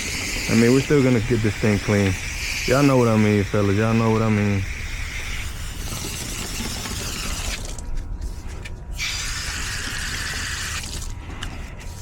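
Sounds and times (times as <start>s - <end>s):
spray hissing onto coil: 0.0s - 7.8s.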